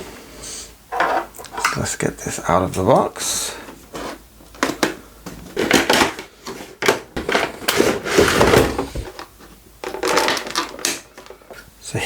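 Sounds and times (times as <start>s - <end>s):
cardboard packaging rustling: 3.7s - 11.4s.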